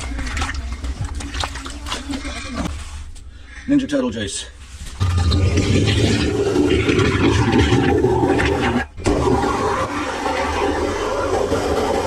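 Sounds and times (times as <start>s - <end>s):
water rushing through a drain: 5.0s - 12.0s.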